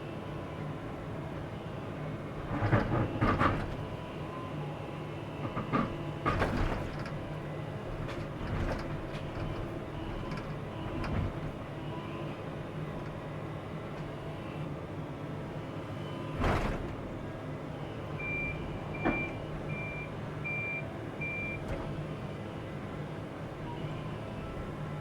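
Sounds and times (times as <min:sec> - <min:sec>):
excavator diesel engine running: 0:00.0 - 0:25.0
warning alarm beeps: 0:18.2 - 0:21.6.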